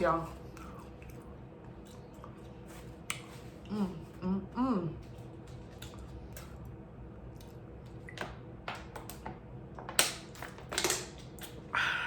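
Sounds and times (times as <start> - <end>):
messy wet chewing: 0.2 - 4.2, 5.0 - 8.2.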